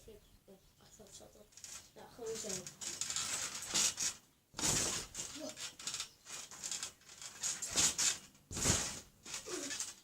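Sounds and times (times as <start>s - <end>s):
trampoline springs bouncing: 1.4s - 10.0s.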